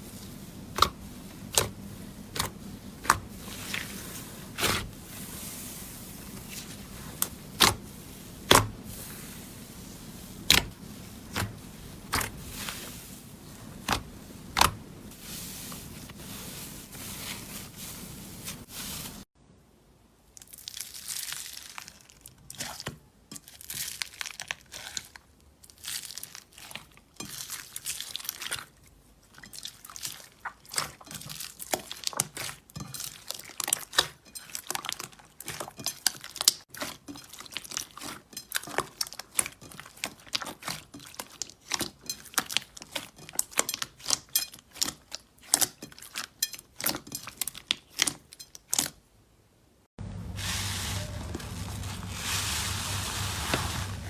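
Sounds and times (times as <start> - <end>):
slime squeezed crinkling: 0.0 - 19.2, 20.4 - 28.8, 29.5 - 48.9, 50.1 - 54.0.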